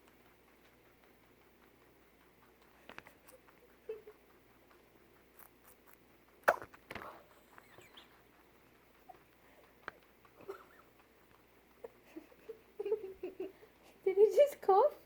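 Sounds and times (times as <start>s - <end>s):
faint small clicks: 0.0s - 3.6s
guinea pig coughing: 5.2s - 12.7s.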